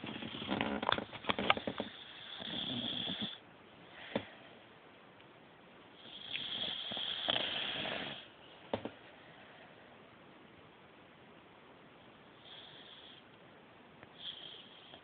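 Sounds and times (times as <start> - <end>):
puppy snoring: 0.0 - 3.4, 6.0 - 8.3, 12.3 - 13.2, 14.1 - 15.0.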